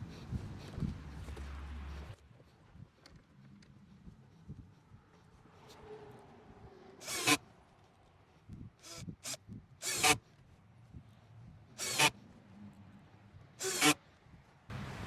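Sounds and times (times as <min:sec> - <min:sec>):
clamp being tightened rasping: 0:07.0 - 0:07.4, 0:08.8 - 0:10.2, 0:11.8 - 0:12.2, 0:13.6 - 0:14.0.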